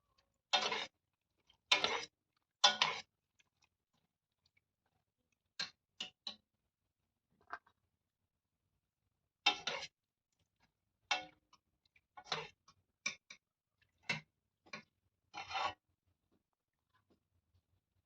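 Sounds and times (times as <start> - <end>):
utensil scraping a cooking pot: 0.5 - 3.1, 9.4 - 10.0, 12.2 - 13.4, 14.0 - 15.8.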